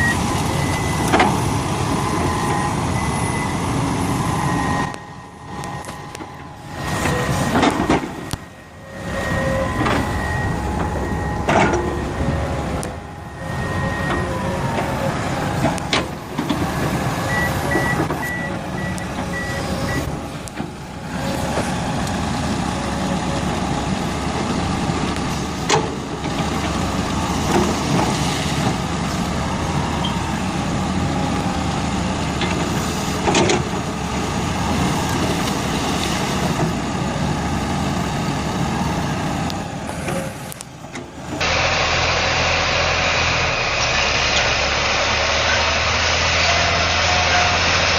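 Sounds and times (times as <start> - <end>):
back-up alarm beeping: 0.0 - 1.2, 2.0 - 16.0, 17.2 - 20.1
heavy machinery engines running: 0.0 - 47.9.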